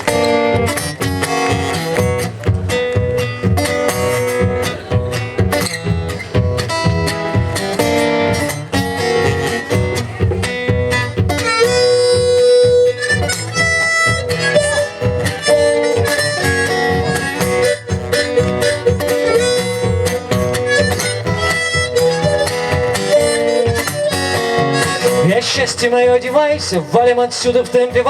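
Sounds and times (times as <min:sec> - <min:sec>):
strummed acoustic guitar: 0:00.0 - 0:28.0
harmonica solo: 0:10.8 - 0:25.4.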